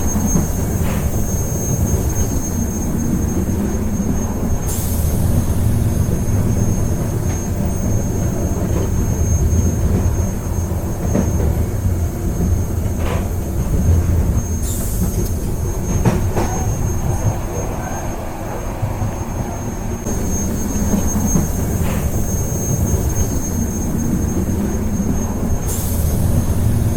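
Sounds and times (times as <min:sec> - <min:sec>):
train wheels rumbling on rails: 0:00.0 - 0:26.9.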